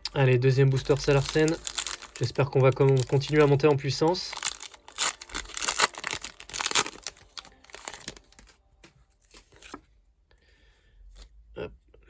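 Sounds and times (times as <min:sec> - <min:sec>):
foil wrapper crinkling and tearing: 0:00.1 - 0:08.5.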